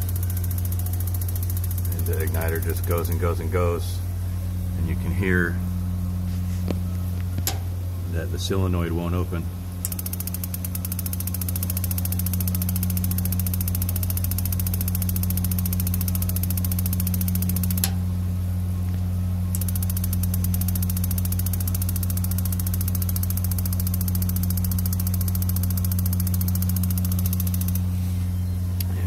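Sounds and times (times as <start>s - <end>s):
spark igniter ticking rapidly: 0.0s - 3.4s, 9.8s - 18.0s, 19.5s - 27.8s
low hum of water heater: 0.0s - 29.0s.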